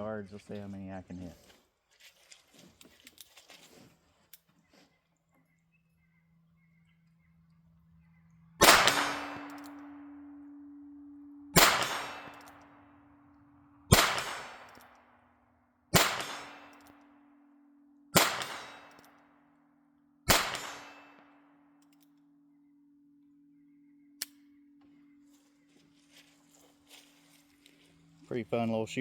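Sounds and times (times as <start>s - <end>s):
revolver gunshots with echo: 8.6s - 10.6s, 11.5s - 13.0s, 13.9s - 15.1s, 15.9s - 17.1s, 18.1s - 19.2s, 20.2s - 21.4s.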